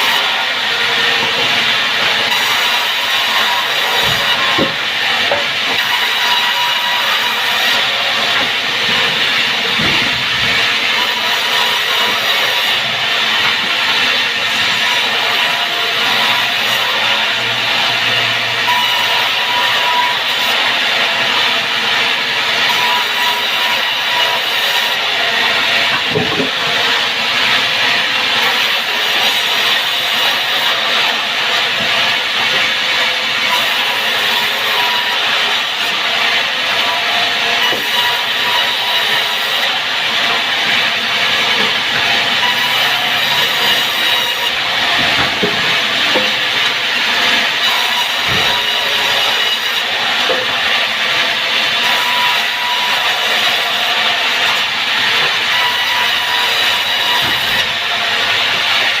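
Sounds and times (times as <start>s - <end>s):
saw cutting through timber: 0.0s - 59.0s.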